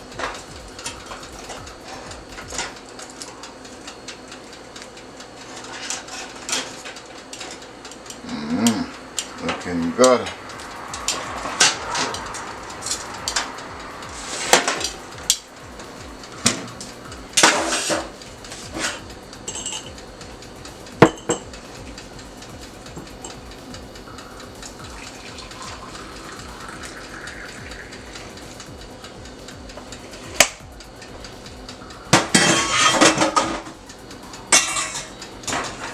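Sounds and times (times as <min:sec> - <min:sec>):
steady background hiss: 0:00.0 - 0:35.9
utensils and dishes clinking: 0:00.0 - 0:35.9.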